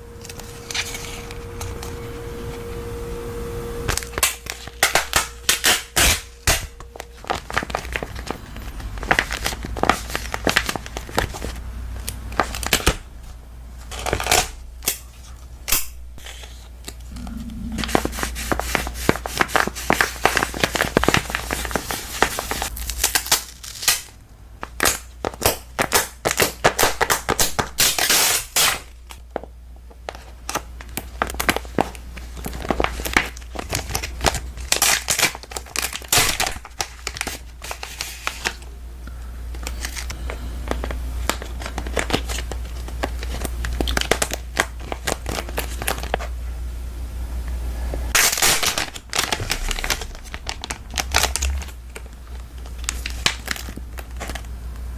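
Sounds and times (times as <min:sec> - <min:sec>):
steady low hum: 0:00.0 - 0:09.9, 0:14.5 - 0:26.3, 0:36.4 - 0:54.9
crinkling and crackling: 0:29.1 - 0:46.4, 0:48.0 - 0:54.9.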